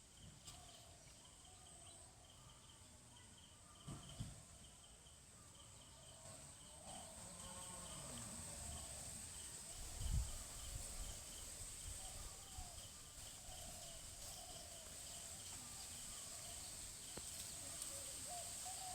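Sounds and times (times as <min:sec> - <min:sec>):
high insect drone: 0:01.4 - 0:18.9
faint wavering calls: 0:05.5 - 0:18.9.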